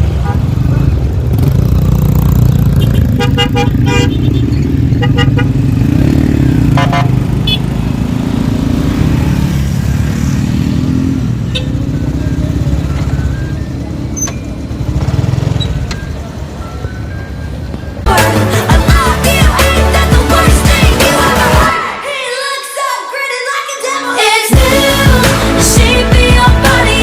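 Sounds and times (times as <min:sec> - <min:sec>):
vehicle engine rumble: 0:00.0 - 0:21.6
road noise: 0:00.0 - 0:22.9, 0:24.2 - 0:27.0
vehicle horn toots: 0:02.8 - 0:05.6, 0:06.7 - 0:07.7.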